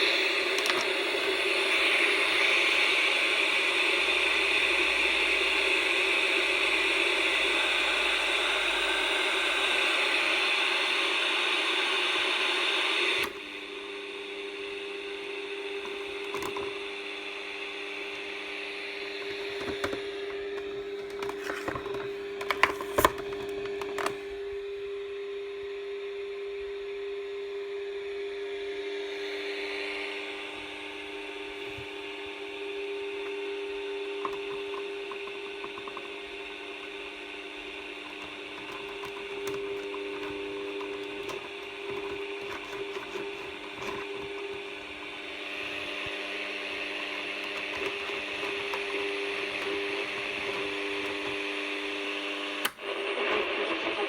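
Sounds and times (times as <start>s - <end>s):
steady electrical hum: 0.0s - 54.0s
loud static hiss from tv speaker: 29.2s - 54.0s.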